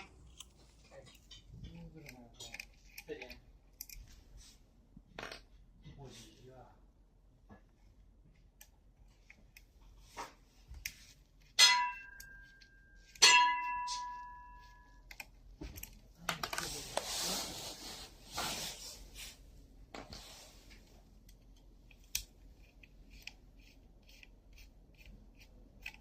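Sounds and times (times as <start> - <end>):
scraping and rustling: 16.3 - 21.0.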